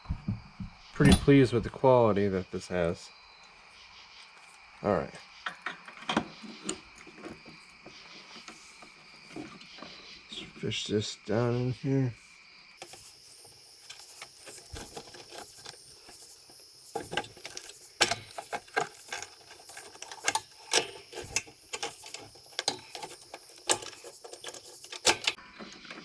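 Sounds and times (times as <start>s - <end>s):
cable scraping through metal frame: 12.8s - 25.8s.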